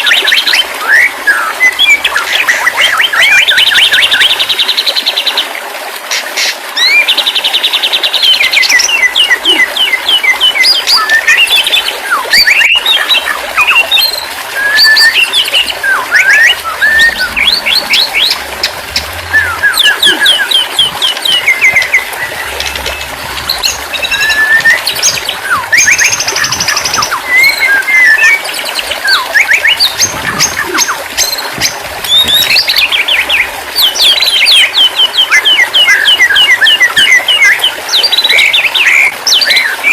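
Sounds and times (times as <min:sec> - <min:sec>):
bird singing trills and whistles: 0:08.1 - 0:39.9.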